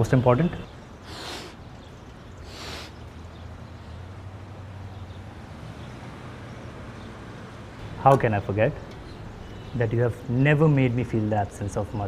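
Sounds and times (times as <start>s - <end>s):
short breathy hiss: 1.0s - 1.6s, 2.4s - 3.0s.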